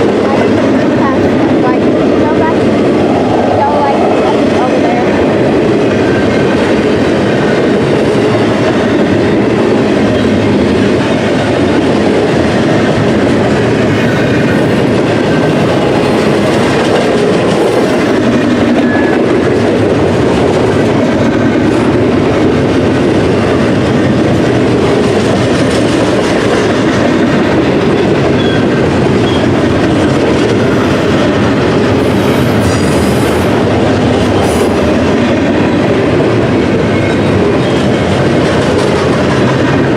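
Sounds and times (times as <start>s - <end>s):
freight train wheels rumbling: 0.0s - 39.9s.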